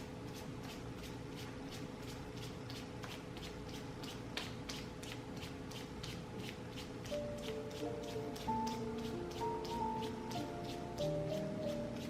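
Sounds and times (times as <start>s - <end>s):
hands rubbing skin: 0.2s - 12.0s.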